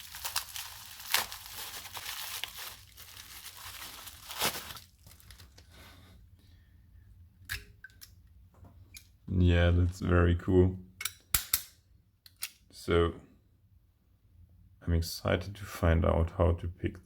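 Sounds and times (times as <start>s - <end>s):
packaging crinkling and tearing: 0.0s - 5.8s.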